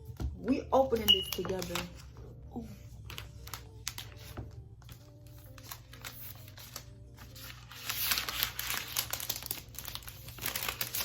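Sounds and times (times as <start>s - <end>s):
packaging wrap crinkling and tearing: 3.0s - 4.4s, 5.0s - 11.0s.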